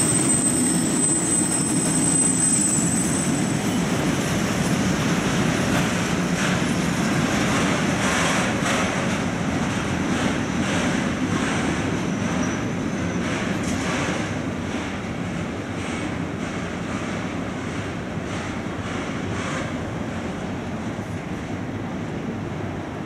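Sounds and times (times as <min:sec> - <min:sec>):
passenger train rumbling past: 0:00.0 - 0:23.0.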